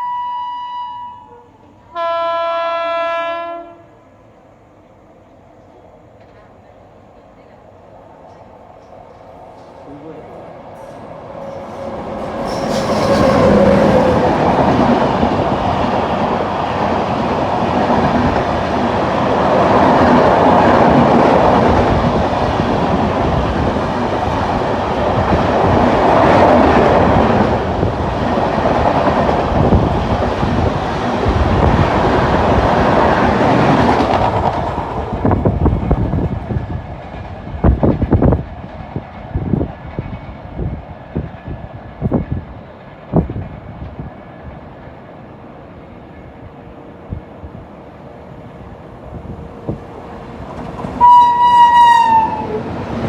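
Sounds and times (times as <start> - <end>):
train passing at high speed: 0.0 - 53.0.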